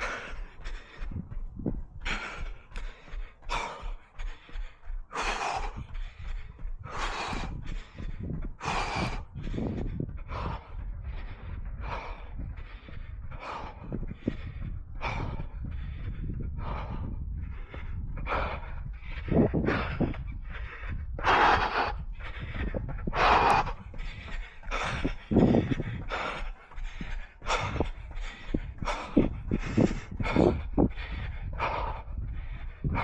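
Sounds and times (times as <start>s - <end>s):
constant low rumble: 0.0s - 33.0s
runner breathing hard: 0.0s - 33.0s.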